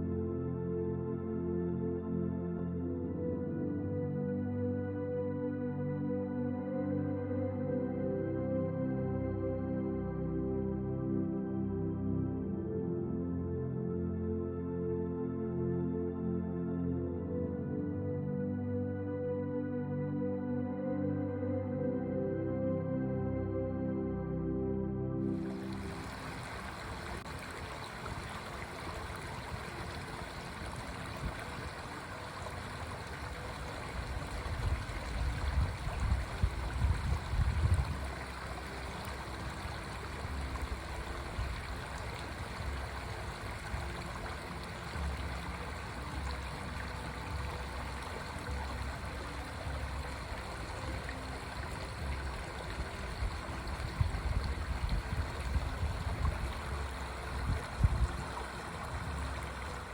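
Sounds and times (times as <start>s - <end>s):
stream water running: 25.3s - 59.9s.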